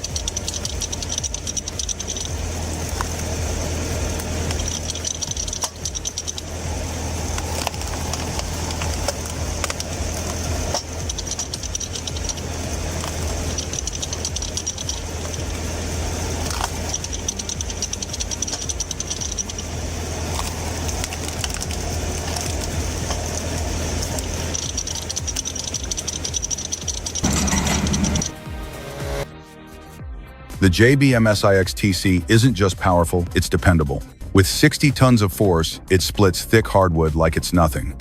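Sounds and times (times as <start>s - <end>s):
fast mechanical clicking: 0.0s - 28.4s
tractor engine drone: 0.0s - 29.5s.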